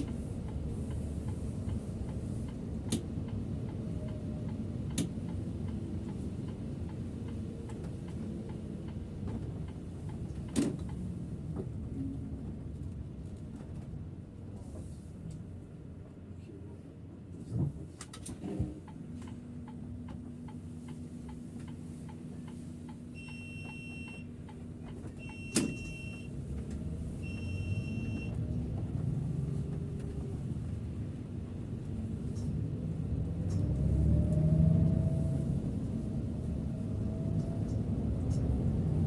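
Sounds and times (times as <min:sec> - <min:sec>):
diesel engine rumbling: 0:18.6 - 0:39.0
electronic beeps: 0:23.2 - 0:24.2.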